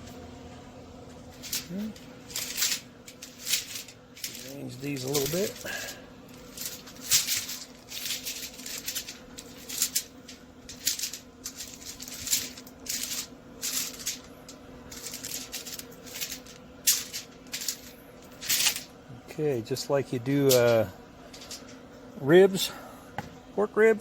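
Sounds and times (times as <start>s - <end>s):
faint steady hum: 0.0s - 24.0s
clicks and rustles of handling: 1.2s - 18.9s, 20.3s - 21.9s.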